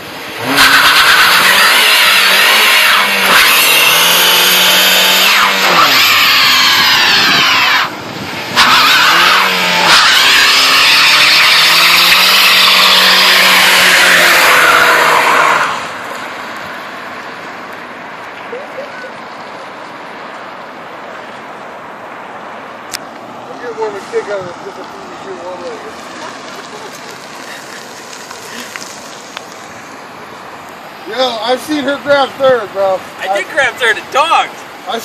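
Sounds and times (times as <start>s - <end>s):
car engine at high revs: 0.0s - 35.0s
tyres screeching: 0.4s - 16.1s.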